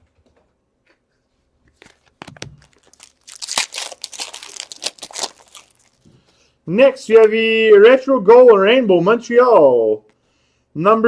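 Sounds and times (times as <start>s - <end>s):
foil wrapper tearing and crinkling: 1.8s - 6.1s.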